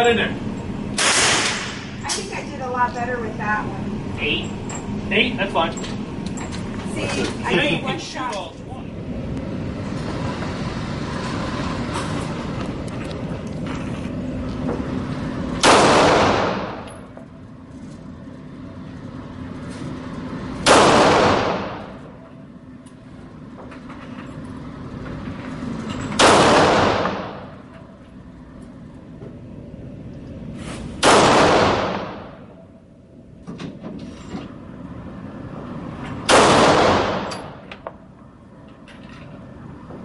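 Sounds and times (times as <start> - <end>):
gunshots with ringing echo: 15.6 - 16.9, 20.6 - 22.0, 26.2 - 27.5, 31.0 - 32.5, 36.3 - 37.6.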